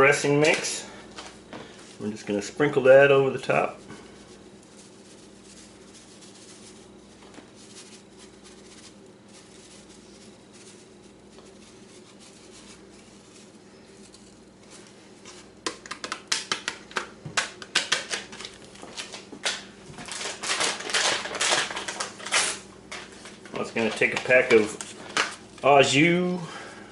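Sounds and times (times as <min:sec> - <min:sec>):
low steady hum: 0:00.0 - 0:26.9
packet crinkling and clicking: 0:15.7 - 0:25.7.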